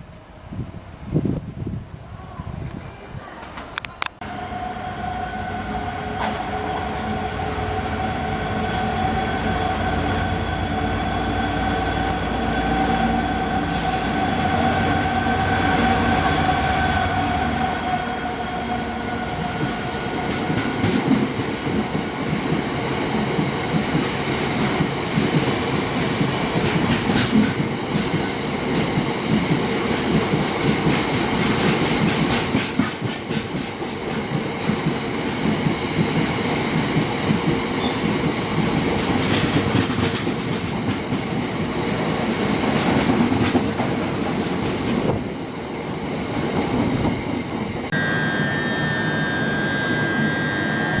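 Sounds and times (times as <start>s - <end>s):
train mechanical whine: 4.2s - 21.9s, 47.4s - 51.0s
train wheels clattering over rail joints: 19.4s - 47.8s.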